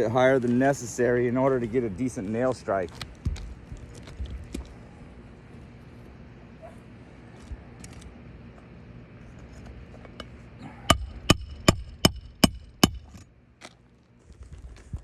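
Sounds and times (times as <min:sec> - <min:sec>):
hammer blows with metallic ring: 0:10.6 - 0:13.2.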